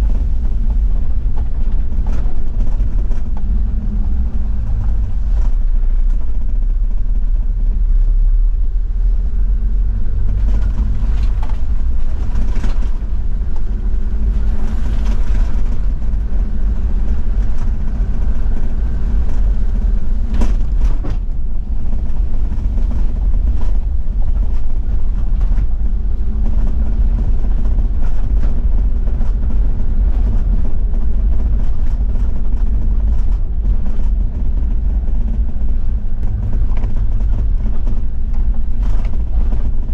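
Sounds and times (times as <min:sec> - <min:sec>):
low diesel engine drone: 0:00.0 - 0:39.9
knocks and rattles: 0:10.2 - 0:39.9.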